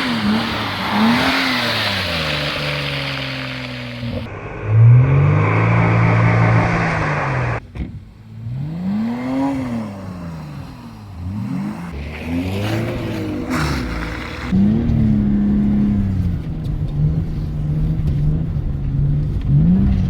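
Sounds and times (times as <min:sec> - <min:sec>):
car engine revving hard: 0:00.0 - 0:07.6, 0:08.4 - 0:16.3.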